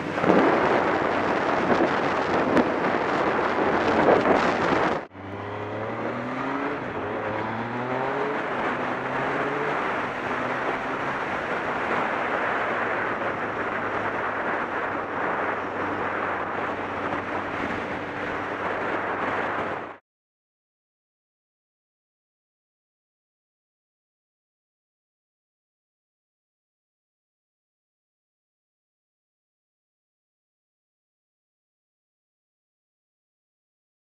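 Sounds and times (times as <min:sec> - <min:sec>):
motorcycle engine: 0:00.0 - 0:20.0
road noise: 0:00.0 - 0:20.0
wind buffeting microphone: 0:00.0 - 0:20.0.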